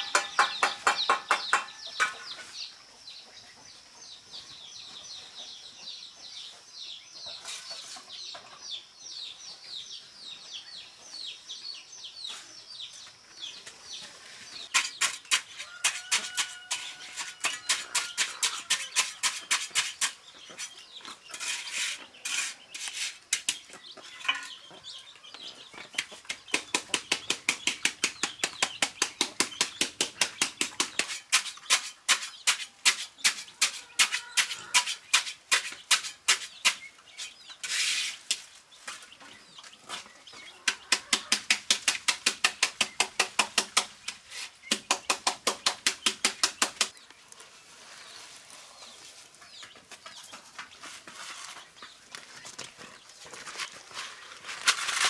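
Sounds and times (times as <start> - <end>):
rapid regular knocking: 0.0 - 1.8.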